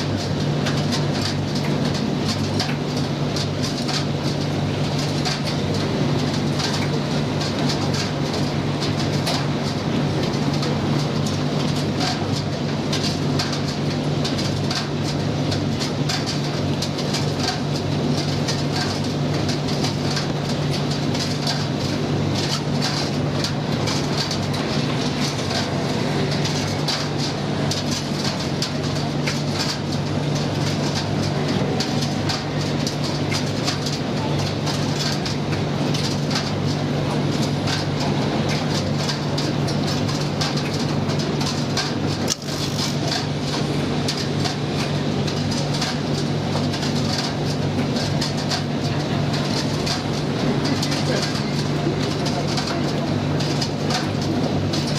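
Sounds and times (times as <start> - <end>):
light clicks of tumbling load: 0.2 - 54.9.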